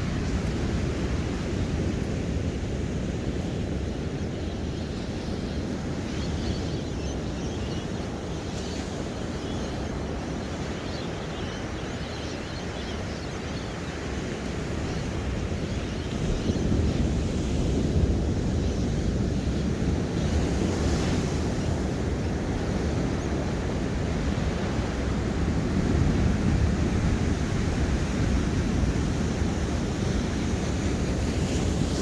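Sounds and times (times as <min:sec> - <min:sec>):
wind rumble on microphone: 0:00.0 - 0:32.0
ocean surf washing: 0:16.9 - 0:32.0.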